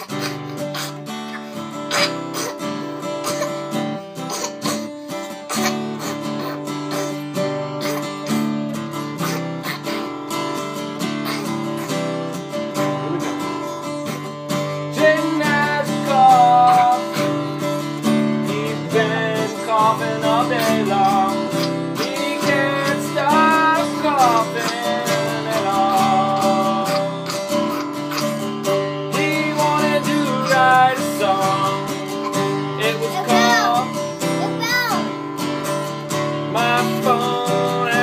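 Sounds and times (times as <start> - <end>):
acoustic guitar strumming: 0.0 - 38.0
person singing: 12.8 - 13.8, 14.9 - 17.5, 18.4 - 28.3, 29.1 - 34.7, 36.5 - 38.0.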